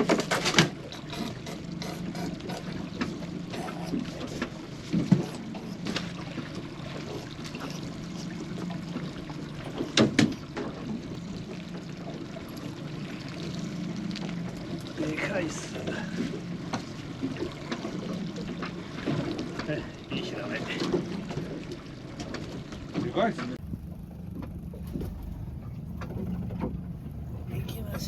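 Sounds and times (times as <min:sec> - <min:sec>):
water splashing and trickling: 0:00.0 - 0:28.0
steady low hum: 0:23.6 - 0:28.0.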